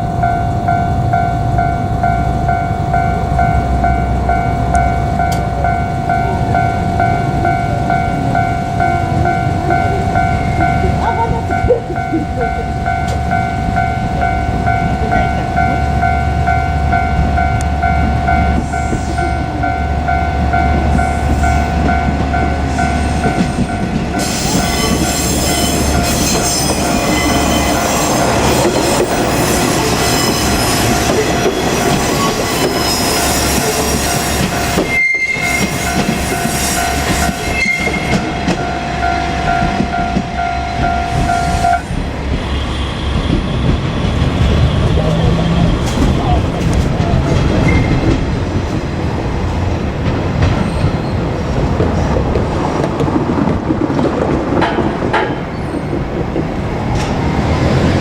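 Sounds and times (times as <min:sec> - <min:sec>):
level crossing bell ringing: 0:00.0 - 0:41.8
diesel railcar passing: 0:00.0 - 0:58.0.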